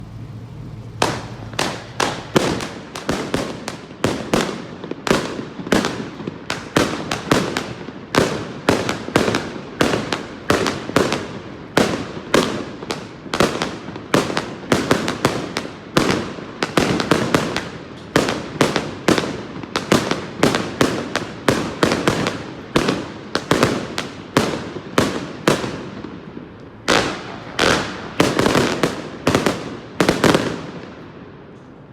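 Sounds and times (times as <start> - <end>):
firework cake bangs: 1.0 - 26.1.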